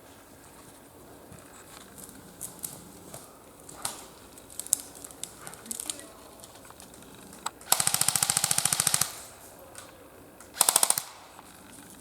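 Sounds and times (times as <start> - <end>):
airsoft gun automatic fire: 7.5 - 9.4, 10.5 - 11.5.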